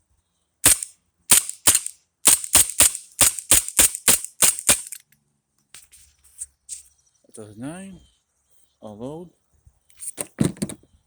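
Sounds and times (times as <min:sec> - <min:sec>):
airsoft pistol shots: 0:00.6 - 0:05.0.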